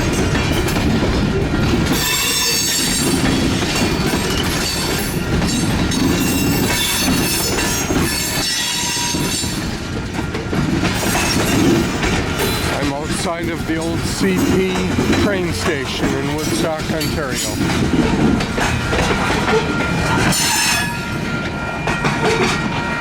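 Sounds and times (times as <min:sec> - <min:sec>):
freight train rumbling past: 0:00.0 - 0:23.0
high-pitched wheel squeal: 0:18.9 - 0:22.9.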